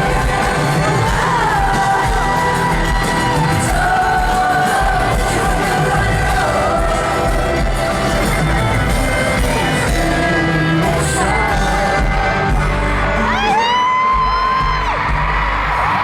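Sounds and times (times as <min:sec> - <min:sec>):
crowd screaming: 0:00.0 - 0:16.0
live pop band playing: 0:00.0 - 0:16.0
person singing: 0:00.0 - 0:16.0.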